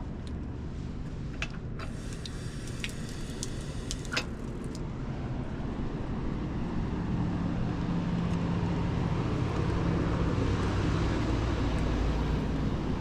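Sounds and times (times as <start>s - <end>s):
road traffic noise: 0.0s - 13.0s
vehicle engine droning: 5.0s - 13.0s.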